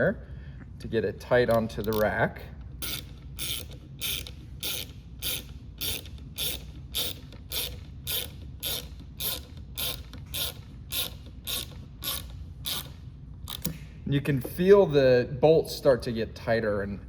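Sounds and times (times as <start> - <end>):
ratchet wrench clicking: 1.5 - 2.2, 2.8 - 13.8.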